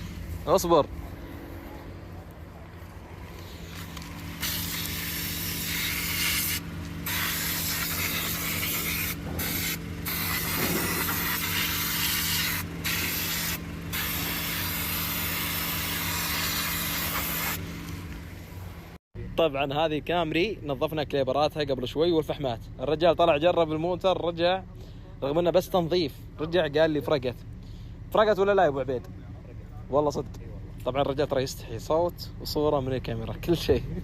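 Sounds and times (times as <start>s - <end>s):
aerosol spray hissing: 4.4s - 17.6s.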